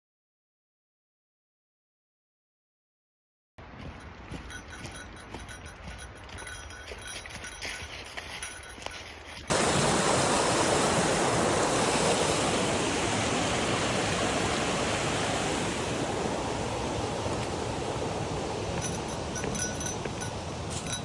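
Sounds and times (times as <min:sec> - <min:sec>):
footsteps on a trail: 0:03.6 - 0:09.7, 0:17.2 - 0:21.0
creek water rushing: 0:08.4 - 0:21.0.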